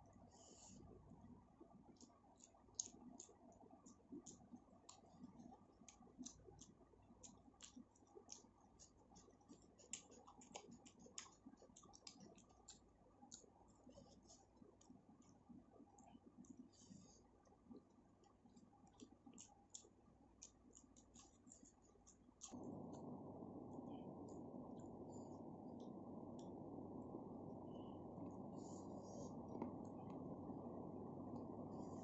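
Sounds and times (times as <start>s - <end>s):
wet mouth clicks: 2.0s - 14.2s, 18.2s - 22.6s
person chewing: 2.0s - 15.4s, 17.8s - 23.1s.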